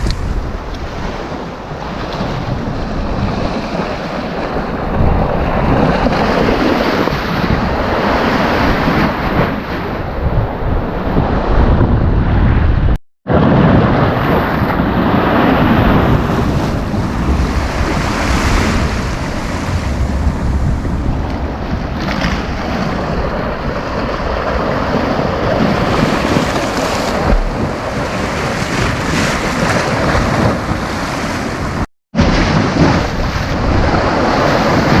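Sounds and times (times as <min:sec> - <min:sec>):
wind buffeting microphone: 0:00.0 - 0:35.0
surf breaking on beach: 0:13.3 - 0:35.0.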